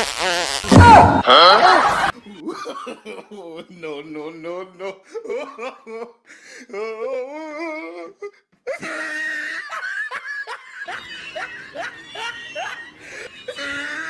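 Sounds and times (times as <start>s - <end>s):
people laughing hard: 1.2s - 4.1s, 5.0s - 8.0s, 8.7s - 14.0s.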